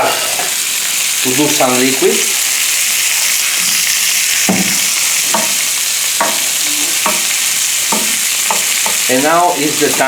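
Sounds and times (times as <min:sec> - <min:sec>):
squid sizzling in oil: 0:00.0 - 0:10.0
stirring utensil knocks: 0:04.4 - 0:07.3, 0:07.9 - 0:10.0.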